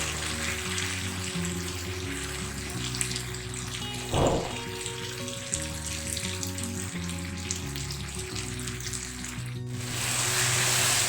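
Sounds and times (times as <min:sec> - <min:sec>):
background music: 0:00.0 - 0:11.0
paste sizzling in oil: 0:00.0 - 0:11.0
short thump: 0:04.1 - 0:04.7.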